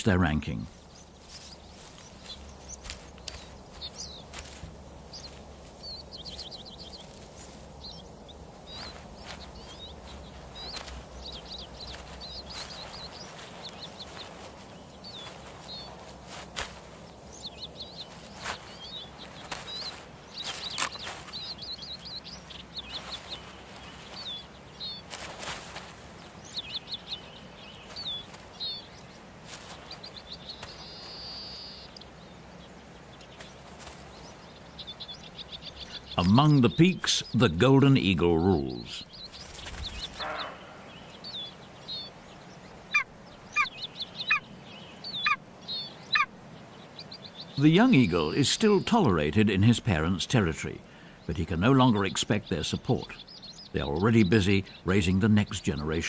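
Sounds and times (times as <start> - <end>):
small birds chirping and trilling: 0.0 - 56.0.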